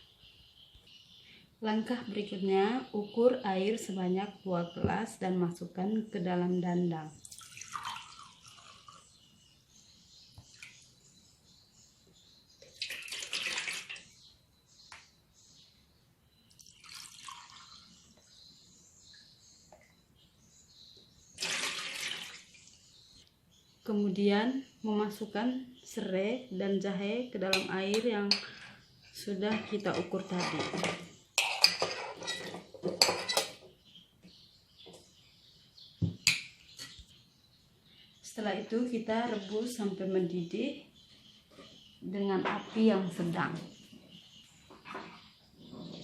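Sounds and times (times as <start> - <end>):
water pouring and splashing: 7.3 - 8.9, 12.8 - 14.1, 16.6 - 17.8, 21.4 - 22.8
metal pot and utensils clinking: 29.5 - 33.6.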